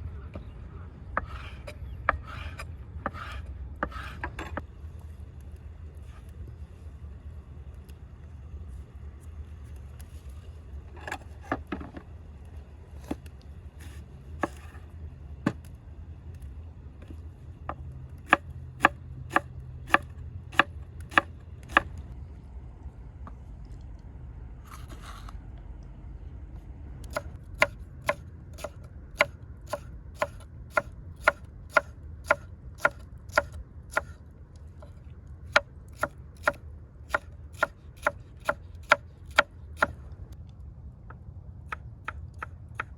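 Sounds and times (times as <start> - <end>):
knife scraping board: 1.2 - 4.6, 13.8 - 14.8, 24.6 - 25.4
knife chopping on wooden board: 14.4 - 14.7, 18.3 - 21.9, 27.1 - 34.1, 35.5 - 40.0.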